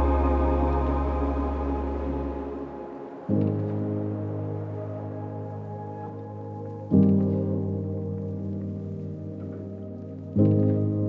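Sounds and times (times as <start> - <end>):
calm ambient music: 0.0 - 11.0.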